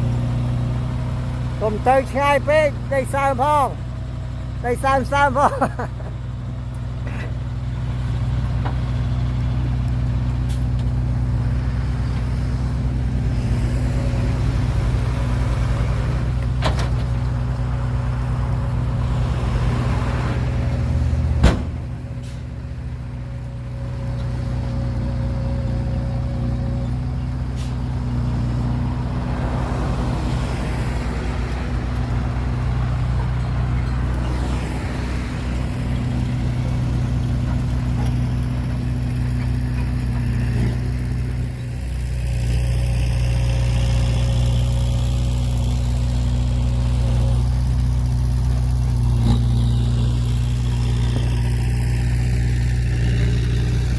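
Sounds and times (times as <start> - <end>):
diesel machine engine running: 0.0 - 53.9
sharp bang: 21.4 - 21.8.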